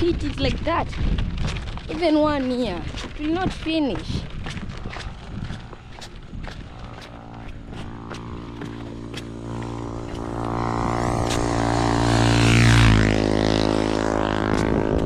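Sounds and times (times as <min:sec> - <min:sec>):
vehicle engine passing by: 0:06.5 - 0:15.0.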